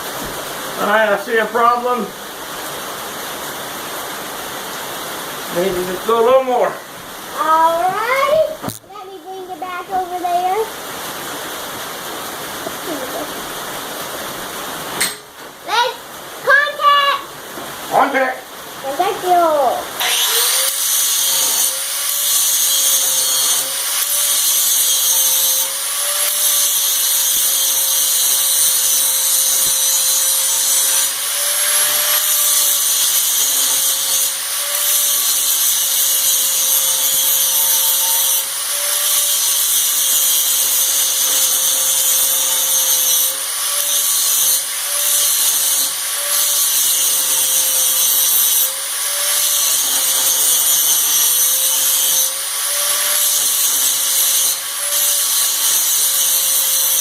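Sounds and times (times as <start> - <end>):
electric grinder grinding steel: 20.0 - 57.0.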